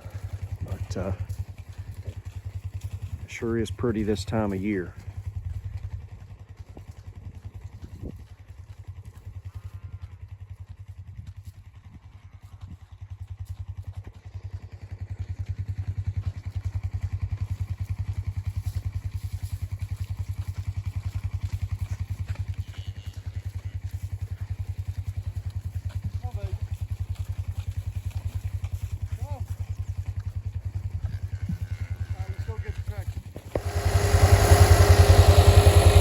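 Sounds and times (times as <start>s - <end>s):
vehicle engine running: 33.3s - 36.0s.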